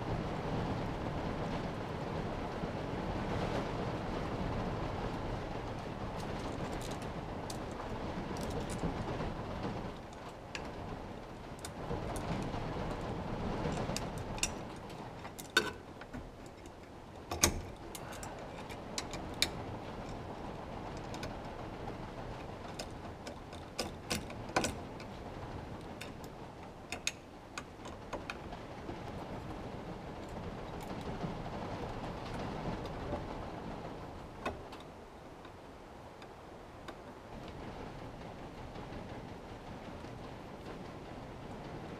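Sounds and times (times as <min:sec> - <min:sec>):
light clicks and knocks: 0:05.7 - 0:29.6.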